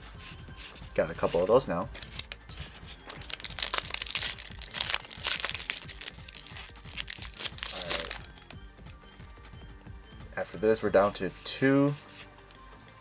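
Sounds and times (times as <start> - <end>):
foil wrapper crinkling and tearing: 3.0 - 8.5.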